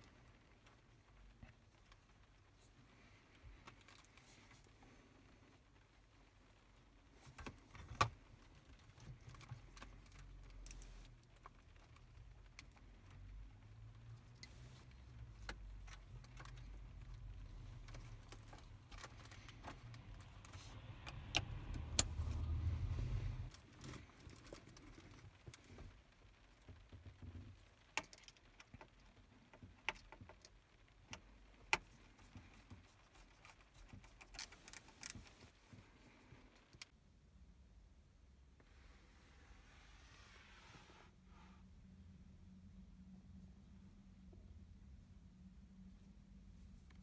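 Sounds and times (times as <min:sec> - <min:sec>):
low rumble: 0:20.1 - 0:23.6.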